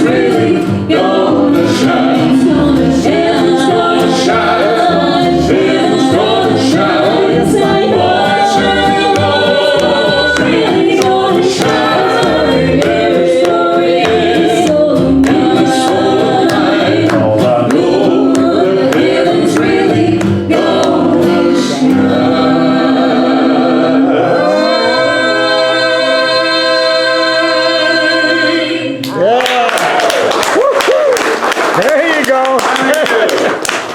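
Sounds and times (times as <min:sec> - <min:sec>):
sharp rhythmic strokes: 0:00.0 - 0:22.6
gospel group singing in harmony: 0:00.0 - 0:29.1.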